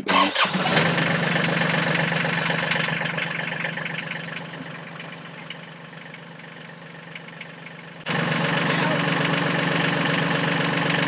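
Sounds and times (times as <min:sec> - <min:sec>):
tractor diesel engine clattering: 0:00.0 - 0:11.0.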